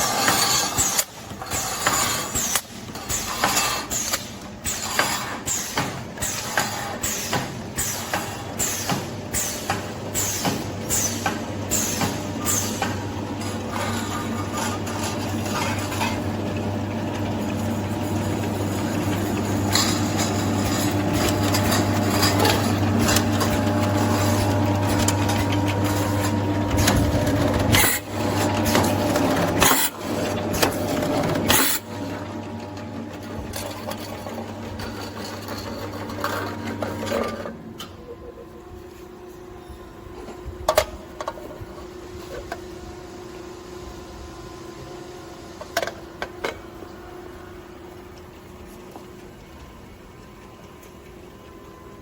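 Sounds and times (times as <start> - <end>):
can seaming machine running: 0.0 - 38.2.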